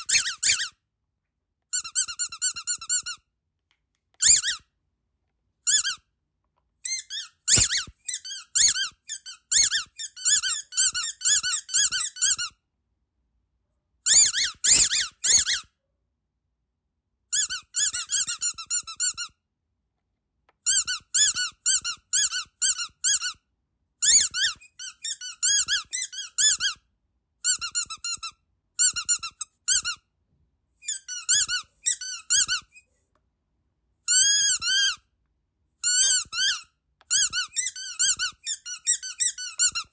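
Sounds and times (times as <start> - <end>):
squeaky dog toy squeaking: 0.0 - 0.8, 1.7 - 3.3, 4.2 - 4.7, 5.6 - 6.1, 6.8 - 12.6, 14.0 - 15.8, 17.3 - 19.4, 20.6 - 23.4, 24.0 - 26.8, 27.4 - 30.1, 30.8 - 32.9, 34.1 - 35.1, 35.8 - 39.9.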